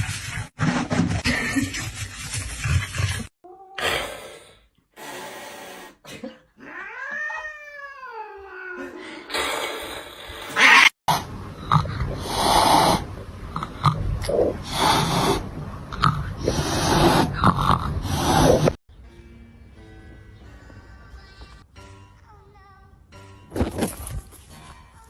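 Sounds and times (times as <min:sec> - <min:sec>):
cat meowing: 0:06.6 - 0:08.9.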